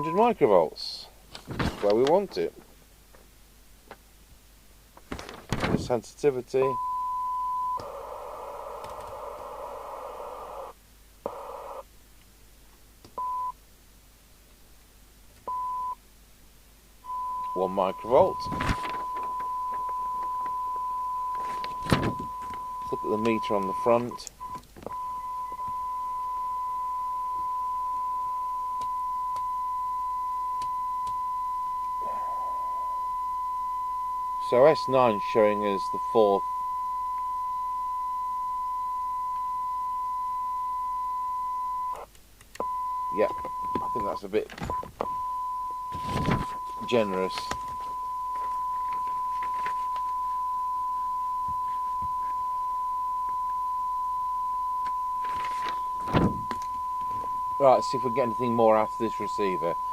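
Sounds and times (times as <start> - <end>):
steady test tone: 17.1 - 42.0, 42.6 - 59.9
faint clicks: 41.9 - 42.7.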